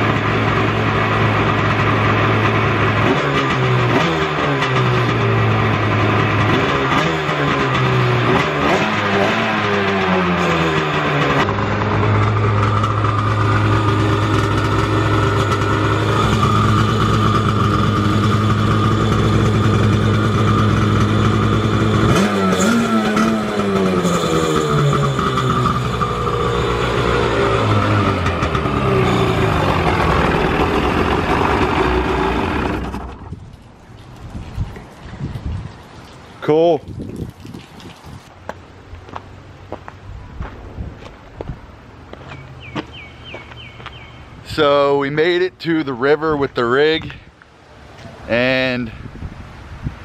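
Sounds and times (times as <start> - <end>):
boat engine idling and revving: 0.0 - 36.0.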